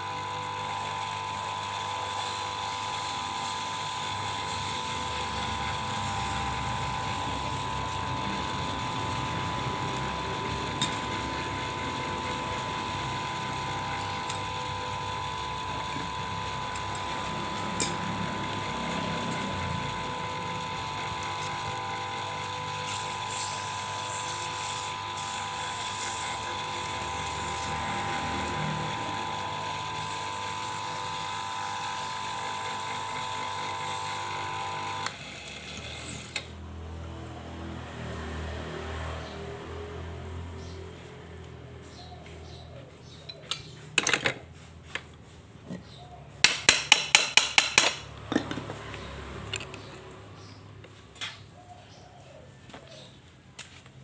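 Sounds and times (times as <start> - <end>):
lathe motor whine and rattle: 0.0 - 36.6.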